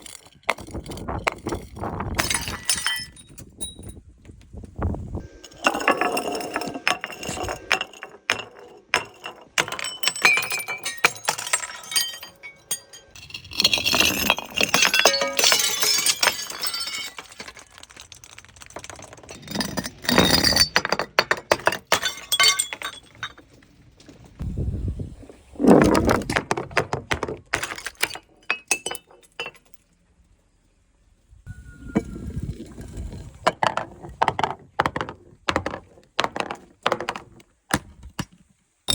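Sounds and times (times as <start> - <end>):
glass bottles breaking: 0.0 - 3.4, 5.3 - 23.5, 27.5 - 29.8.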